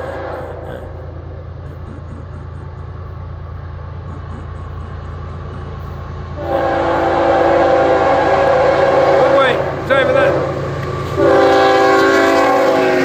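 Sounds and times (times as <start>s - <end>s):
diesel locomotives rumbling: 0.0s - 13.0s
locomotive horn: 6.4s - 13.0s.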